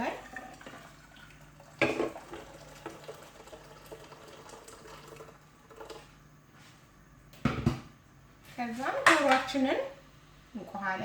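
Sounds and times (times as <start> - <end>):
water pouring into a pot: 0.0 - 6.1
knock: 7.4 - 7.9.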